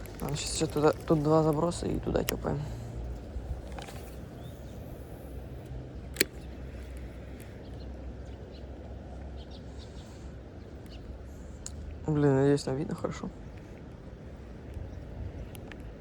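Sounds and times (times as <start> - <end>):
sharp click: 3.7 - 7.5.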